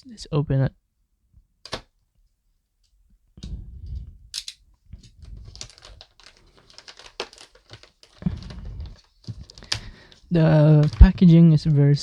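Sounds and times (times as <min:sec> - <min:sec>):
packaging crinkling and tearing: 0:05.0 - 0:11.8.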